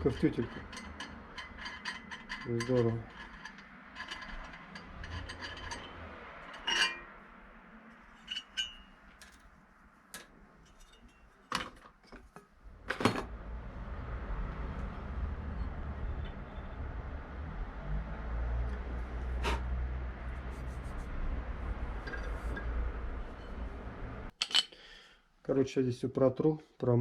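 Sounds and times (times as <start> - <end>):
metal parts clinking and knocking: 0.0 - 7.2, 8.0 - 9.5, 10.1 - 13.3, 22.0 - 22.8, 24.4 - 24.8.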